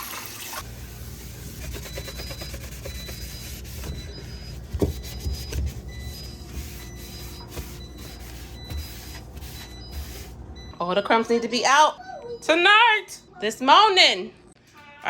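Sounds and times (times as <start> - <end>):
sponge scrubbing inside refrigerator: 0.6 - 10.5.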